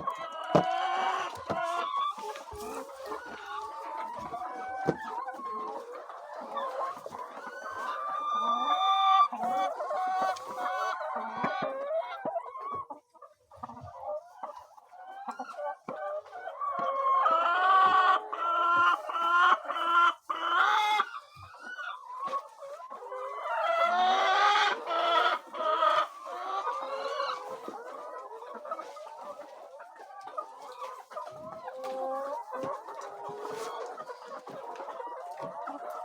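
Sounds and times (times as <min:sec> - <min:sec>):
chickens clucking: 0:00.0 - 0:36.0.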